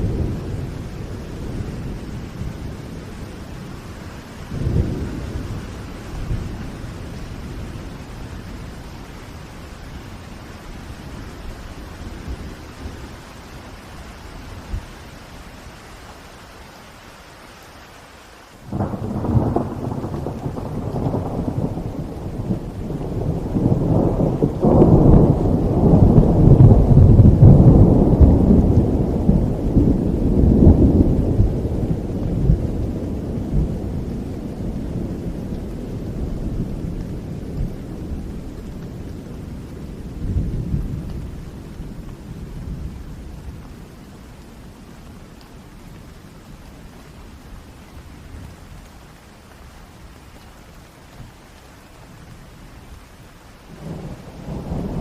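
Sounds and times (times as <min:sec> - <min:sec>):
rolling thunder: 0:00.0 - 0:08.8, 0:18.7 - 0:44.1, 0:53.6 - 0:55.0
steady rain: 0:00.0 - 0:55.0.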